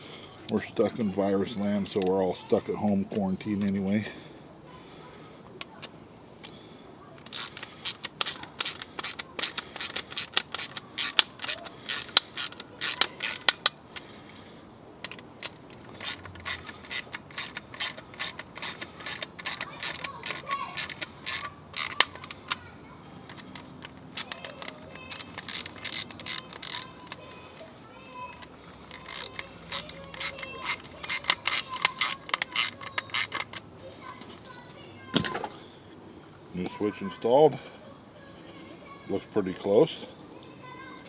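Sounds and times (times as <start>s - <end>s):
hand ratchet clicking: 7.2s - 14.1s, 15.0s - 22.7s, 23.3s - 27.7s, 28.3s - 34.2s.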